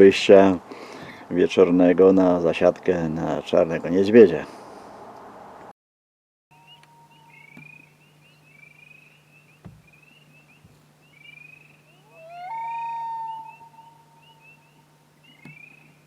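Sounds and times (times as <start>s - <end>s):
faint low hum: 6.6s - 16.0s
high chirps: 11.2s - 15.9s
loon wailing: 11.9s - 14.8s.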